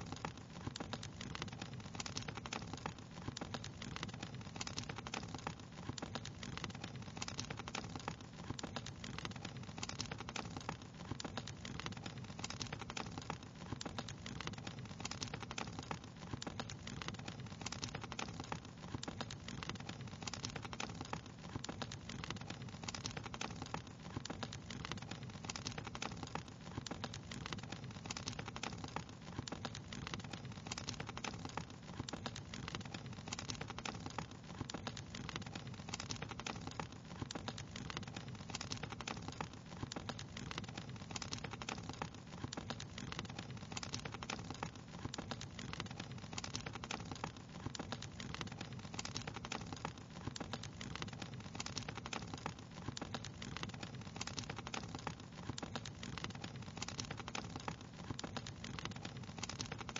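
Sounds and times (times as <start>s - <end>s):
wood fire crackling: 0.0s - 59.9s.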